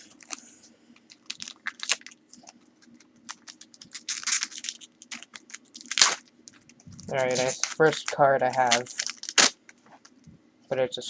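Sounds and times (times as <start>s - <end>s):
foil wrapper crinkling and tearing: 0.0s - 10.2s.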